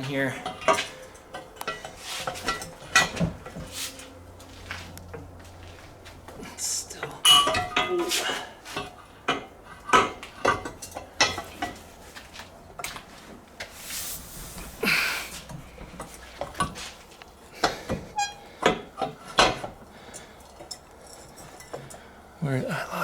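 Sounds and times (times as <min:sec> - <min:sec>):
metal clanks and knocks: 0:00.3 - 0:05.4, 0:07.3 - 0:11.9, 0:17.6 - 0:22.0.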